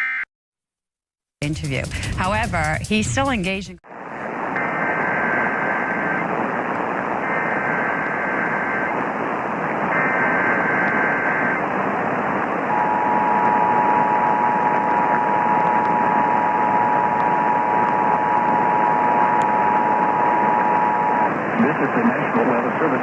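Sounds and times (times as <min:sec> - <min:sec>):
radio receiver hiss: 0:03.9 - 0:23.0.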